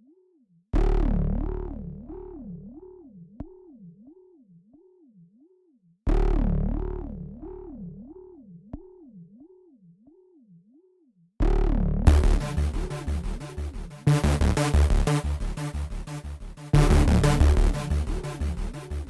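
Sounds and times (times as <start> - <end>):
heavy bass hit: 12.0 - 19.0.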